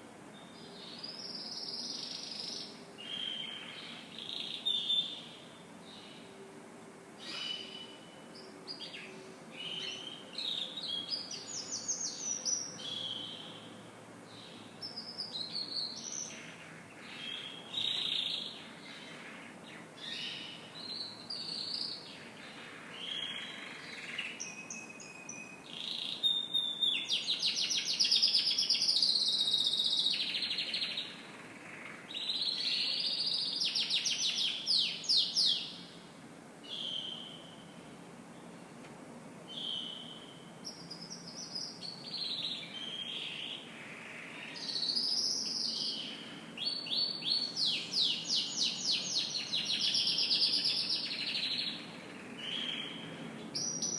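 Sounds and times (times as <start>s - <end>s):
canary singing: 14.4s - 35.9s, 44.4s - 53.9s.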